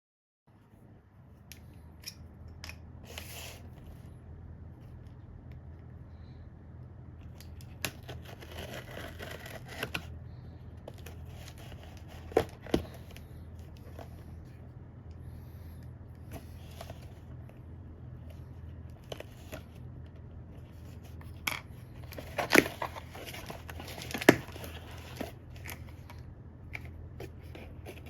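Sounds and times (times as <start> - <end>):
steady low hum: 0.5 - 28.0
packaging rustling: 22.0 - 26.2.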